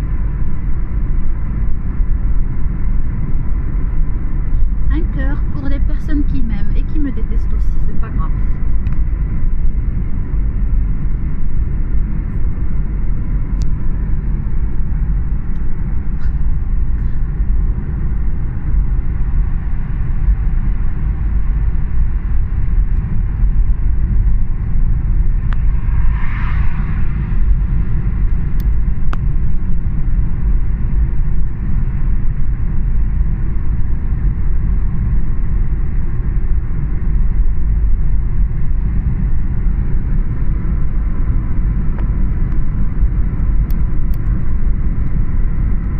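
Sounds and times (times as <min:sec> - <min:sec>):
train low rumble: 0:00.0 - 0:45.9.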